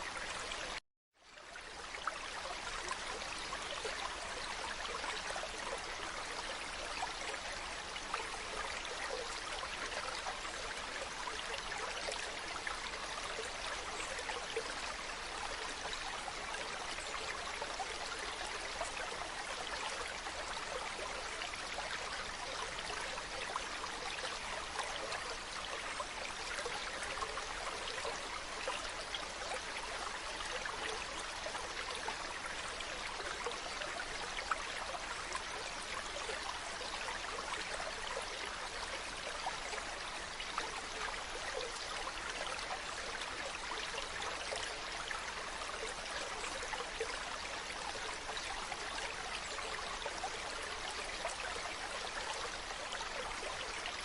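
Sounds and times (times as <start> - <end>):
stream running over rocks: 0.0 - 54.0.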